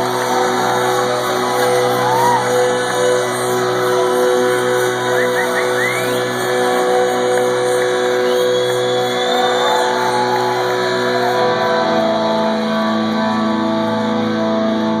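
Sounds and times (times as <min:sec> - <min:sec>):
electric guitar chords: 0:00.0 - 0:15.0.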